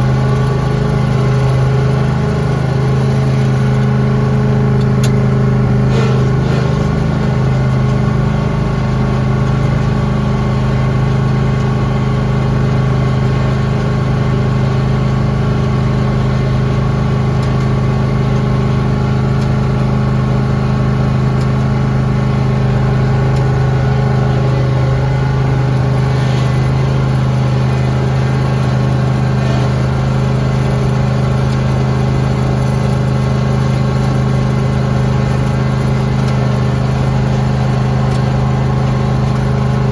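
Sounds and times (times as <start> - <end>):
lawn tractor engine running: 0.0 - 39.9.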